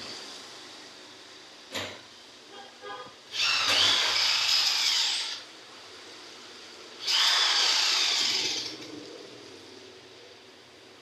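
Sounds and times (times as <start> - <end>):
power tool motor whine: 3.3 - 5.4, 7.0 - 8.9.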